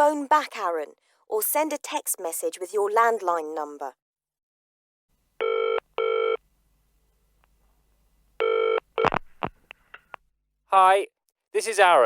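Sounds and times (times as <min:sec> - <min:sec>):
telephone ringing: 0:05.4 - 0:06.4, 0:08.4 - 0:08.8.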